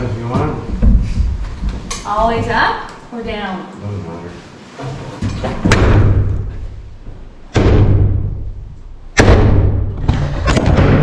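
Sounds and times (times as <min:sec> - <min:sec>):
hammer striking wooden framing: 0:07.5 - 0:08.4, 0:09.1 - 0:11.0.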